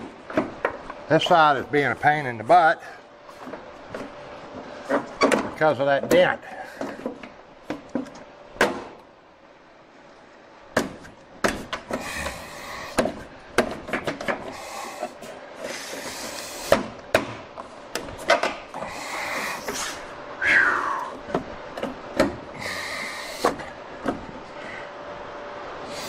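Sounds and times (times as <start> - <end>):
sharp clicks and knocks: 13.0 - 14.6, 16.2 - 18.7.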